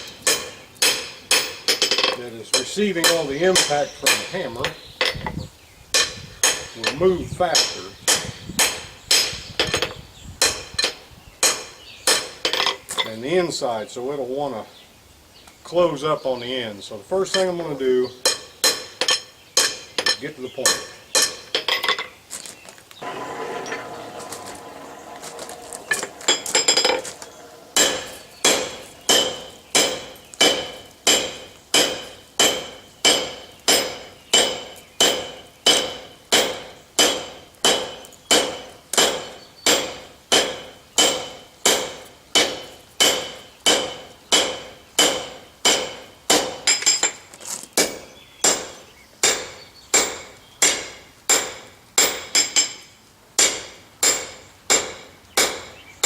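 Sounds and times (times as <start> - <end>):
hammer striking metal on anvil: 3.0 - 4.3, 23.0 - 47.1.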